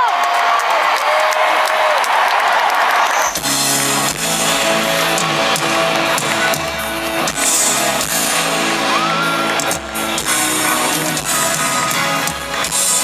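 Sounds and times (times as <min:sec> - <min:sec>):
pop dance music over loudspeakers: 0:03.1 - 0:13.0.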